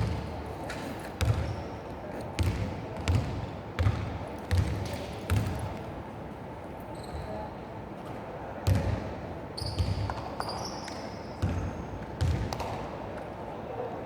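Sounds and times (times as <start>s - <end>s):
basketball bouncing on gym floor: 1.2s - 1.5s, 2.4s - 5.7s, 8.6s - 9.0s, 11.4s - 12.8s
shoe squeaks: 6.9s - 7.4s, 9.6s - 11.4s.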